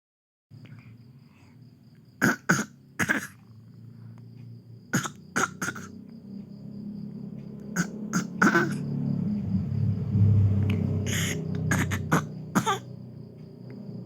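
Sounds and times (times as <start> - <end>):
baby fake coughing: 2.2 - 3.4, 4.9 - 6.0, 7.8 - 8.8, 11.1 - 12.9.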